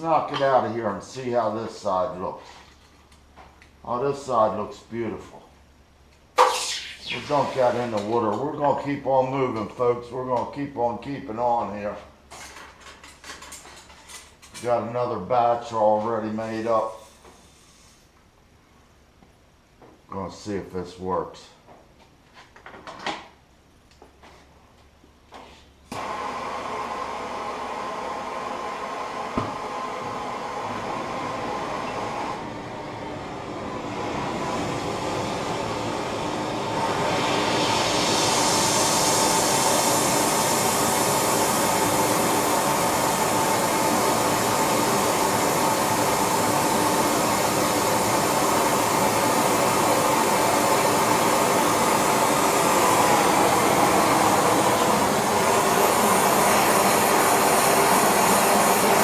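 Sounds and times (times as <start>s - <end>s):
gas torch hissing: 6.4s - 9.4s, 25.9s - 59.0s.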